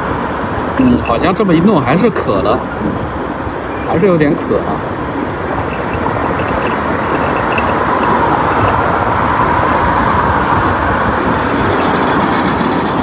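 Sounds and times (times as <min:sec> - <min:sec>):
road and traffic noise: 0:00.0 - 0:13.0.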